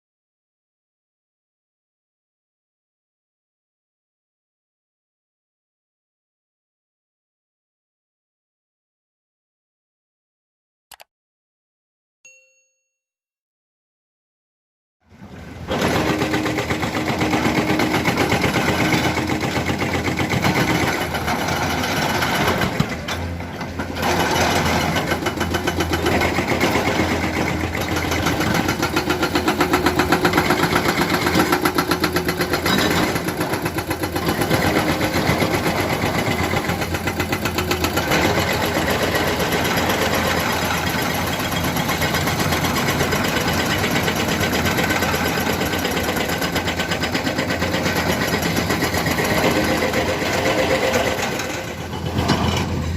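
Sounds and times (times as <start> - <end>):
diesel engine of heavy machinery: 15.1 - 52.9.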